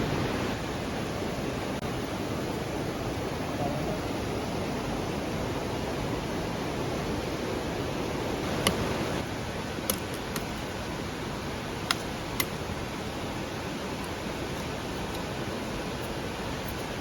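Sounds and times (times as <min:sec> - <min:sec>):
campfire crackling: 0:08.2 - 0:17.0.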